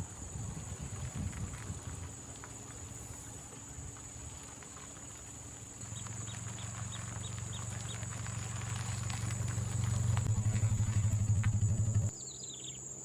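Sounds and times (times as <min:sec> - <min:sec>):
small engine rumbling: 0:00.0 - 0:12.7
steady high whine: 0:09.0 - 0:12.1.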